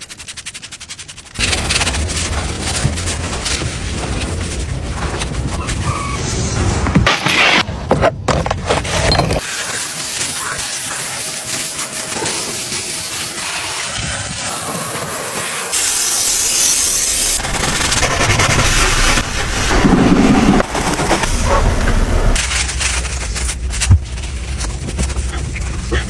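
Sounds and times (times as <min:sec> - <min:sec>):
car wash spray hissing: 0:09.4 - 0:23.4.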